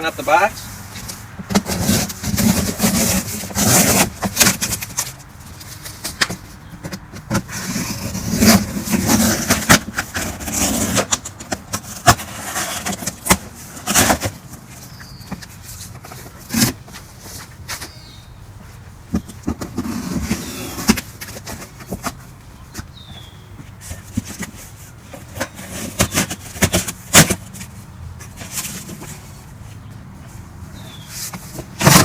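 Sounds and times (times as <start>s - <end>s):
cardboard tearing and scraping: 1.5s - 5.1s, 7.2s - 14.6s, 31.5s - 32.0s.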